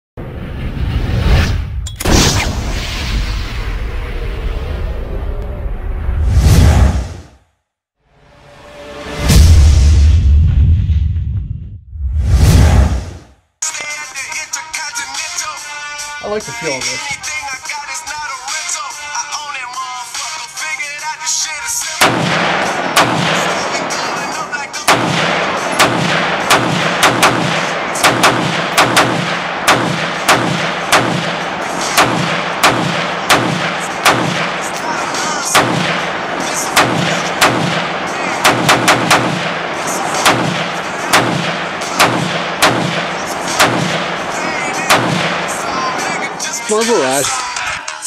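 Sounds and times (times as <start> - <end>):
rapid gunfire: 21.8 - 47.0.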